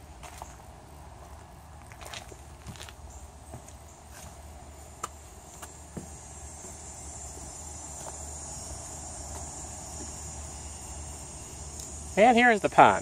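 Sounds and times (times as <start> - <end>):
footsteps: 0.0 - 10.4
high-pitched insect chorus: 0.0 - 13.0.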